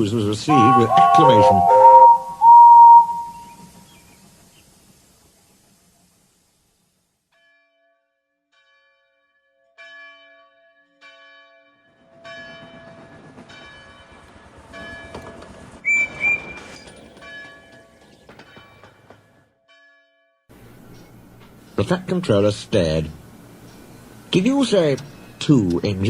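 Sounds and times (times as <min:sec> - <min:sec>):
train whistle blasts: 0:00.0 - 0:03.8, 0:15.9 - 0:16.9
railway engine running: 0:00.0 - 0:07.2, 0:12.3 - 0:19.4, 0:20.5 - 0:26.0
bell-like chiming notes: 0:00.5 - 0:03.5.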